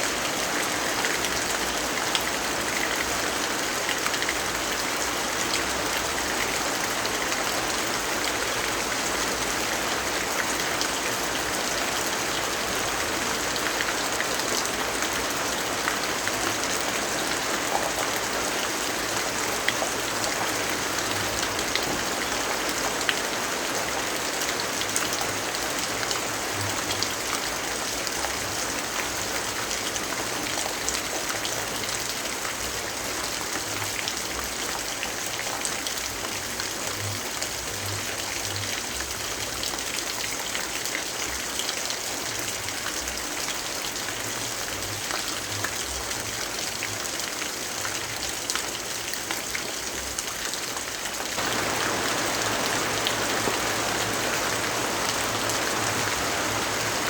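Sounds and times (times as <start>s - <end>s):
steady rainfall hiss: 3.0s - 30.8s, 51.1s - 57.0s
raindrops ticking close by: 51.4s - 57.0s.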